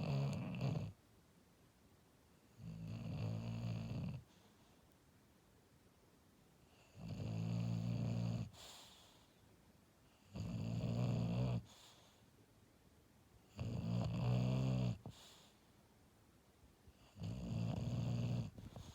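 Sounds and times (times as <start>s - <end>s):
dog snoring: 0.0s - 1.0s, 2.5s - 4.4s, 6.7s - 9.3s, 10.1s - 12.2s, 13.4s - 15.5s, 16.9s - 18.9s
soft dog breath: 3.9s - 5.0s, 7.7s - 10.6s, 11.5s - 12.4s, 14.9s - 15.8s, 17.0s - 18.9s.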